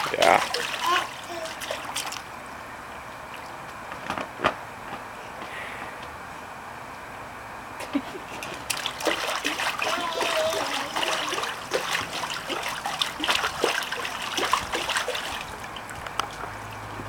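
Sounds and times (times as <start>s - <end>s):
pool water splashing: 0.0s - 3.9s, 8.2s - 17.0s.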